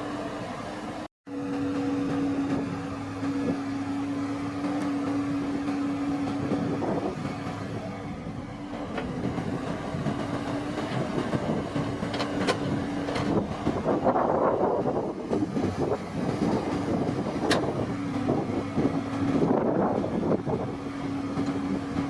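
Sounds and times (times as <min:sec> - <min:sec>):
harvester engine droning: 0:00.0 - 0:22.0.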